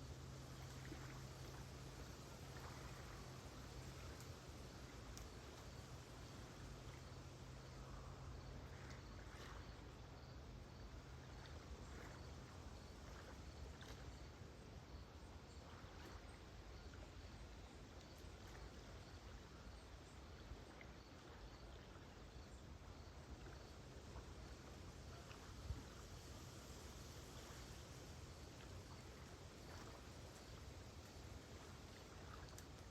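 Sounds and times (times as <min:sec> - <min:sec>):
waves lapping softly: 0:00.0 - 0:32.9
cricket chirping: 0:05.0 - 0:23.8.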